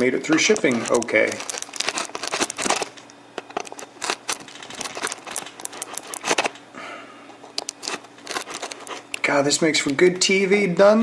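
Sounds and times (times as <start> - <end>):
packaging rustling: 0.0 - 6.6, 7.5 - 9.3
packaging clicks and taps: 0.3 - 6.6, 7.5 - 9.2.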